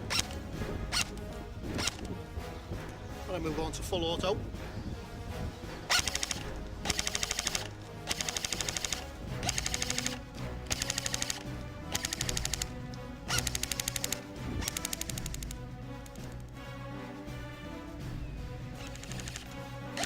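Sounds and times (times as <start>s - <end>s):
airsoft gun firing bursts: 5.9s - 15.6s.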